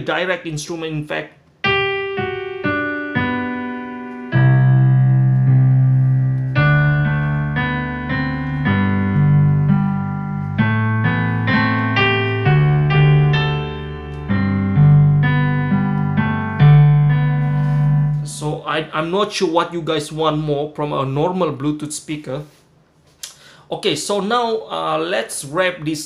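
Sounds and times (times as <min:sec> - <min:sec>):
piano notes and chords: 0:01.6 - 0:20.5
deep bass notes: 0:04.4 - 0:18.6.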